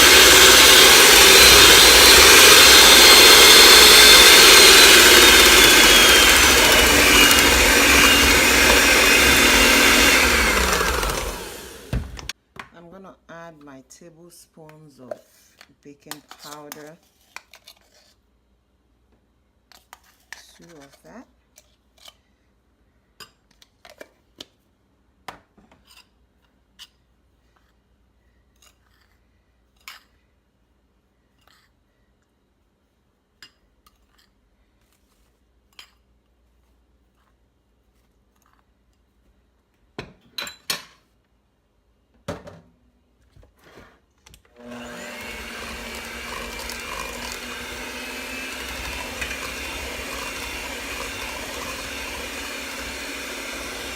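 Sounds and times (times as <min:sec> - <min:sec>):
electric mixer motor whining: 0:00.0 - 0:12.3, 0:44.5 - 0:53.9.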